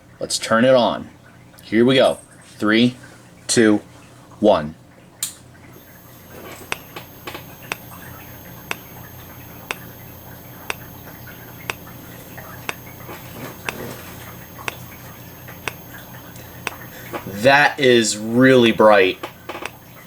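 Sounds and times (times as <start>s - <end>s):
high-pitched capacitor squeal: 5.8s - 17.8s
strobe ticking: 5.8s - 20.0s.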